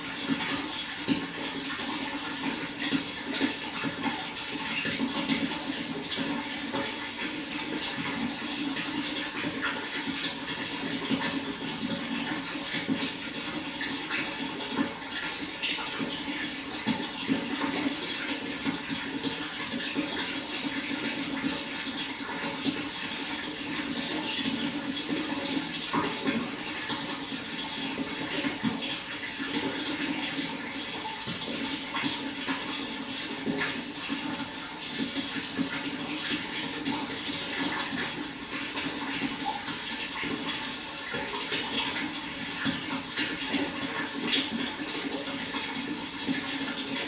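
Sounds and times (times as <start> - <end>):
water flowing with splashes: 0.0 - 47.0.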